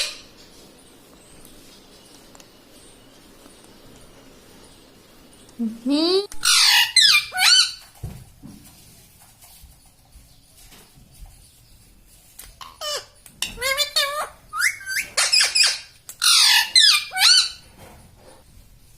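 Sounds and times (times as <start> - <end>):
parakeet squawking and chattering: 0.0 - 0.4, 6.2 - 7.8, 12.6 - 17.7.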